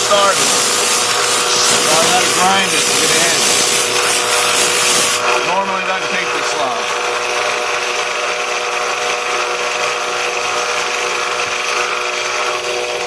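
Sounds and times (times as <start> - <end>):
blade grinding hiss: 0.0 - 5.4
belt grinder motor hum: 0.0 - 13.0.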